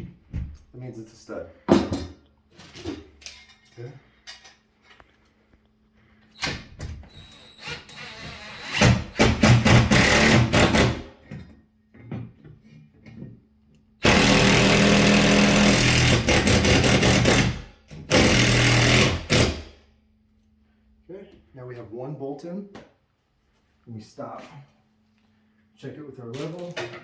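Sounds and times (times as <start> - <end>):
impact driver driving screw: 7.3 - 11.1, 14.0 - 19.7.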